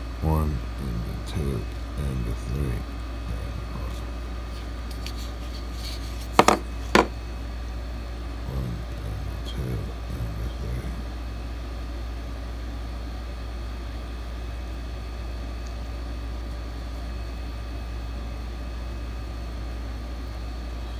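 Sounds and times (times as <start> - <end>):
steady low hum: 0.0 - 20.9
soft handling knocks: 6.3 - 7.1.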